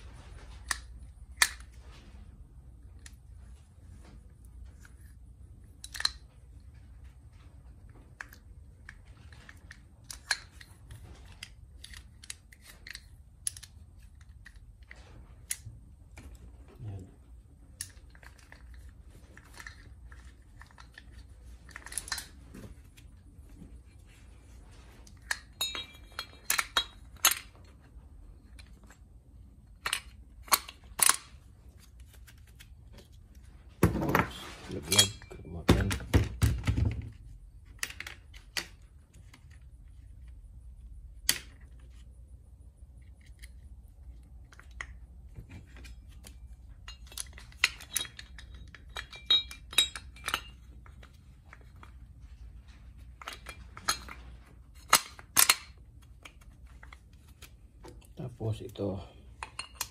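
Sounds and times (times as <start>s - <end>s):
metallic clicks of parts handled: 0.4s - 1.8s, 4.6s - 16.5s, 17.6s - 24.2s, 25.0s - 33.5s, 36.7s - 42.1s, 42.9s - 59.9s
ringing metal clinks: 25.6s - 26.9s.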